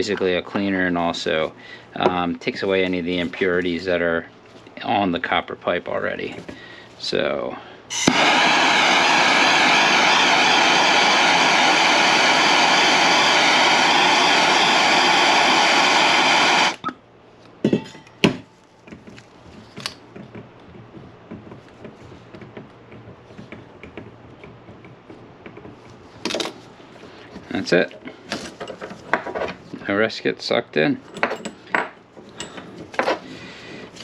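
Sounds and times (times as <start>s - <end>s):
torch flame hissing: 7.9s - 16.8s.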